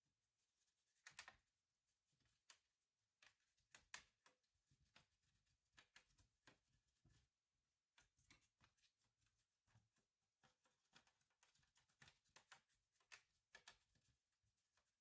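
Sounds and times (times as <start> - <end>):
small parts clicking and tapping: 3.2 - 5.1, 9.8 - 14.1.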